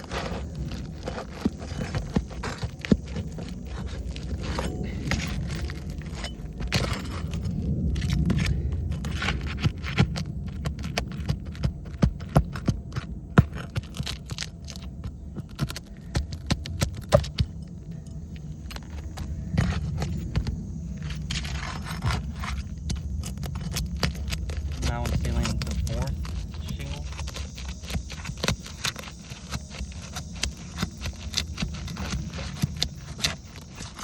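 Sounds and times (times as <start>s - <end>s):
steady low rumble: 0.0s - 34.0s
shingles tearing loose: 12.4s - 17.4s, 21.0s - 34.0s.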